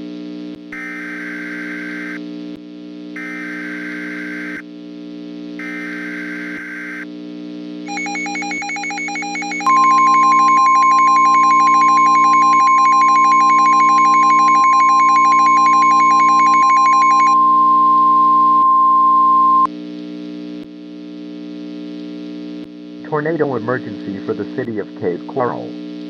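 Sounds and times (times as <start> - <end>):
rapid two-pitch beeping: 7.9 - 19.7
steady high alarm tone: 7.9 - 19.7.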